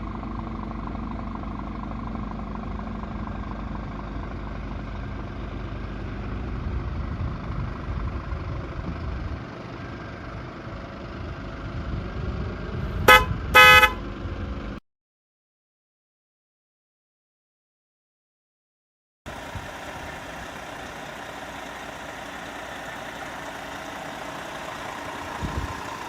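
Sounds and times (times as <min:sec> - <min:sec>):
truck engine running: 0:00.0 - 0:14.8, 0:19.3 - 0:26.0
truck horn blasts: 0:13.0 - 0:14.2.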